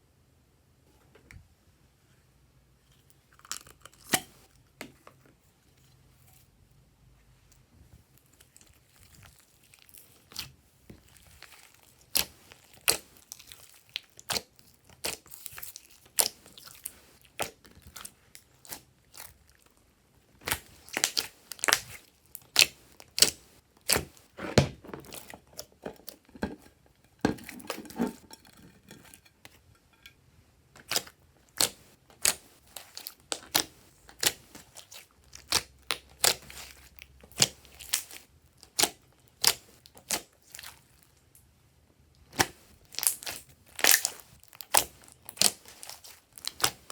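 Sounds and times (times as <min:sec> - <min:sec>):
hands squishing slime: 0:08.3 - 0:19.5, 0:20.4 - 0:26.4, 0:30.8 - 0:41.0, 0:42.3 - 0:46.9.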